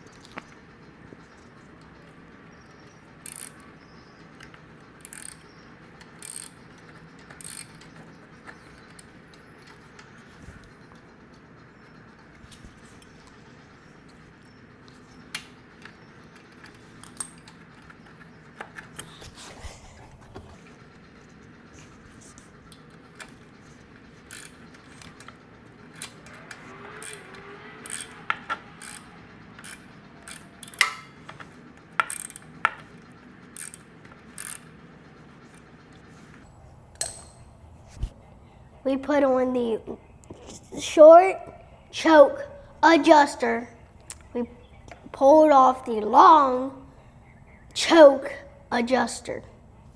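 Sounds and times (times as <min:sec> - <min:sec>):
metallic clicks of hand tools: 0:03.3 - 0:03.6, 0:04.4 - 0:05.4, 0:06.0 - 0:08.0, 0:15.4 - 0:17.9, 0:24.3 - 0:31.4, 0:32.0 - 0:32.9, 0:33.6 - 0:34.7.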